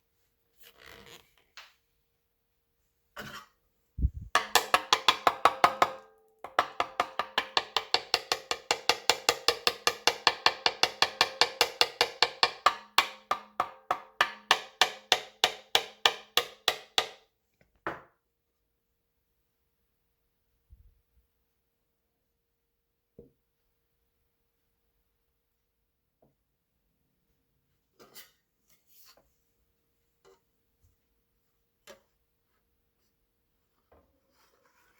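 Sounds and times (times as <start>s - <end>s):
rapid wooden taps: 4.4s - 17.2s.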